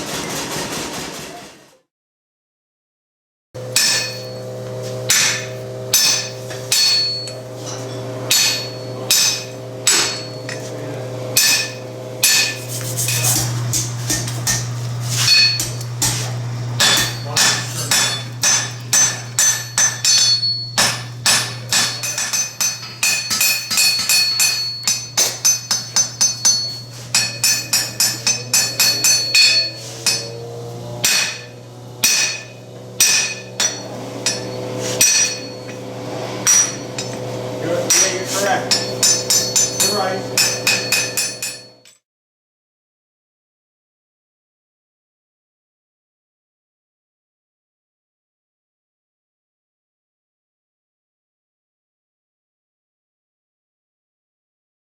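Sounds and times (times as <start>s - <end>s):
steady low hum: 3.6s - 41.8s
hammer striking steel on anvil: 3.6s - 41.9s.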